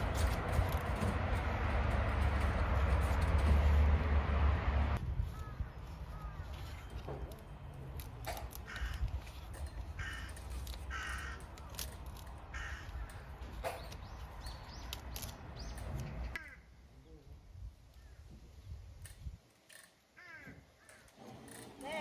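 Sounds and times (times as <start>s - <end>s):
crows cawing: 5.4s - 6.6s, 8.6s - 9.1s, 9.9s - 11.6s, 12.5s - 13.3s, 16.4s - 16.7s, 20.2s - 21.1s.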